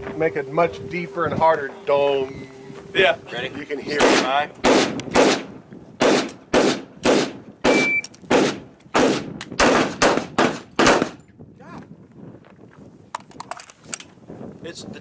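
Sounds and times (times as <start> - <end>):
short high beep: 0.4 - 3.5, 7.7 - 8.1
handgun shots: 4.0 - 11.2.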